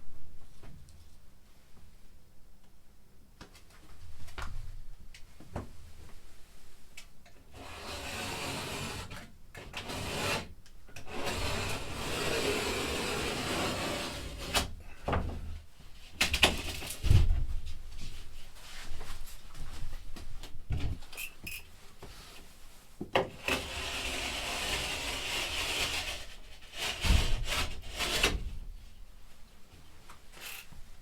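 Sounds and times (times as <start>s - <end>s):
scraping drywall: 11.1s - 14.7s, 23.3s - 28.6s.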